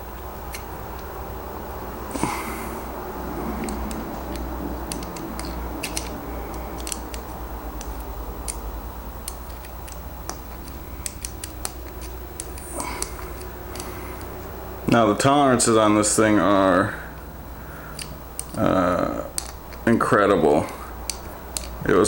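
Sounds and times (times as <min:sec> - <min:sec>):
steady low hum: 0:00.0 - 0:22.0
small metal clicks and scrapes: 0:00.5 - 0:01.1, 0:03.5 - 0:14.4, 0:17.9 - 0:18.6, 0:19.3 - 0:20.0, 0:21.0 - 0:21.9.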